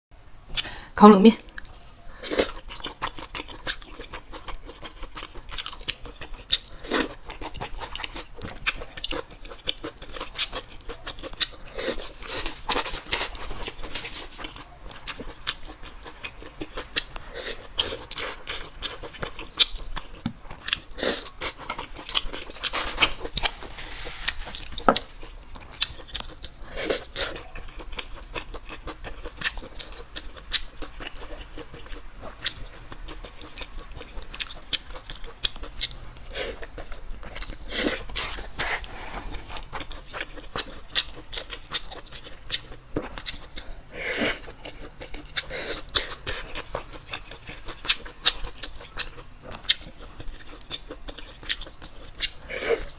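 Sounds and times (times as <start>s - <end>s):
person chewing crunchy food: 1.4s - 52.9s.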